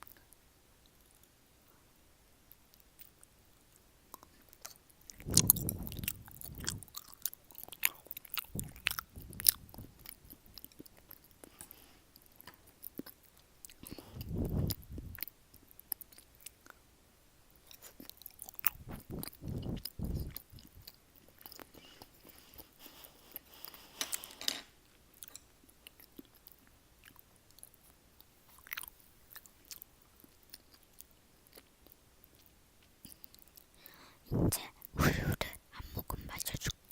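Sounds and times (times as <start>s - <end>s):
person chewing food: 2.5s - 16.8s, 17.5s - 34.0s
wet mouth clicks and smacks: 4.2s - 11.6s, 17.6s - 21.8s.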